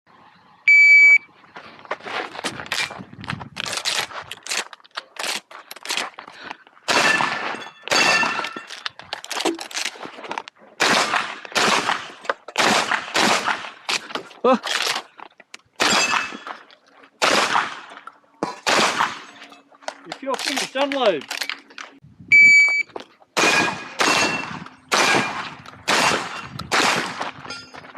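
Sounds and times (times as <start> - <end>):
shot timer beep: 0.7 - 1.3, 22.3 - 22.9
shotgun shots: 6.9 - 8.5, 10.8 - 14.0, 15.8 - 16.4, 17.2 - 17.9, 18.5 - 19.4, 23.4 - 27.4.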